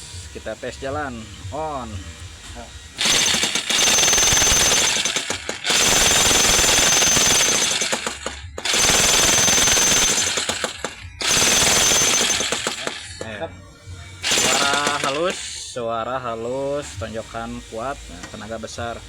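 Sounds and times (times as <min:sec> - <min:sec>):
jackhammer hammering: 0:03.0 - 0:13.4, 0:14.2 - 0:15.6.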